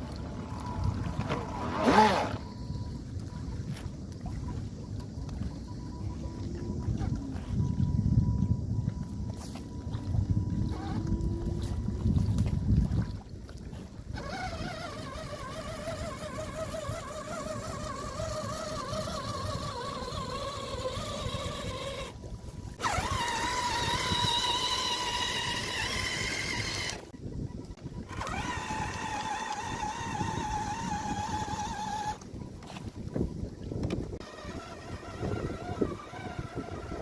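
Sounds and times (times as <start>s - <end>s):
small electric motor whining: 0.0s - 3.0s, 9.0s - 12.6s, 14.1s - 27.2s, 27.9s - 32.9s, 33.8s - 37.0s.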